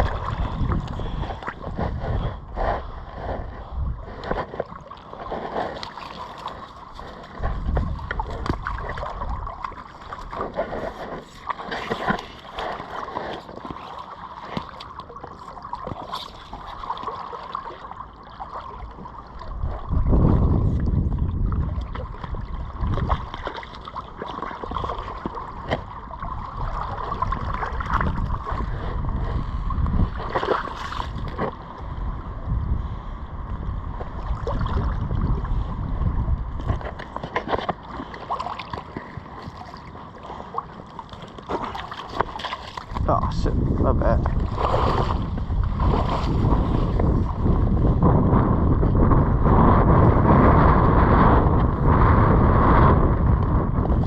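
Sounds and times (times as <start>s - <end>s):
wind gusts buffeting microphone: 0.0s - 4.5s, 7.3s - 9.6s, 19.5s - 23.4s, 24.7s - 37.3s, 42.8s - 54.0s
water splashing and sloshing: 0.0s - 54.0s.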